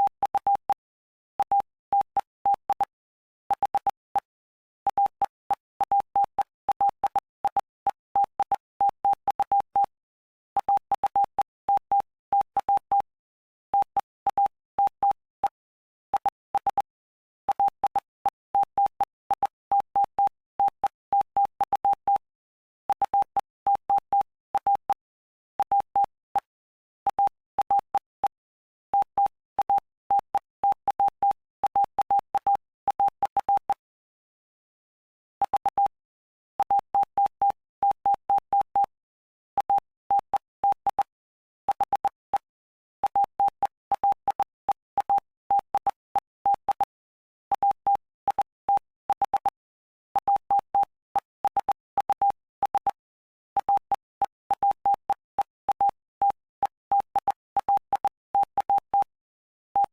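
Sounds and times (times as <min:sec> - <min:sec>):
morse code beeps: 0:00.0 - 0:00.8, 0:13.8 - 0:15.6, 0:17.5 - 0:22.2, 0:22.9 - 0:25.0, 0:27.1 - 0:28.4, 0:29.0 - 0:33.8, 0:35.4 - 0:36.0, 0:36.6 - 0:38.9, 0:39.6 - 0:41.1, 0:41.7 - 0:49.6, 0:50.2 - 0:53.0, 0:53.6 - 0:59.1.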